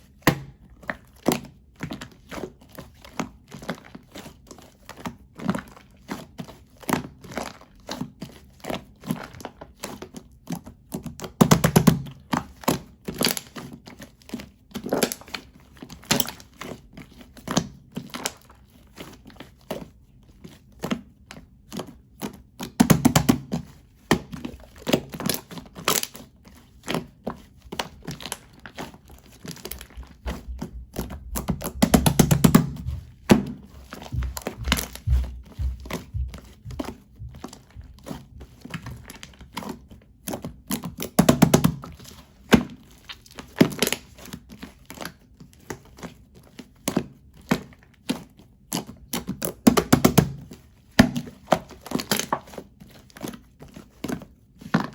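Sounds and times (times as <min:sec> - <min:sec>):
slime squelching thuds: 0:00.1 - 0:02.4, 0:11.1 - 0:13.6, 0:21.8 - 0:26.2, 0:26.8 - 0:45.0, 0:46.8 - 0:54.2
slime clicking and crackling: 0:20.7 - 0:54.9.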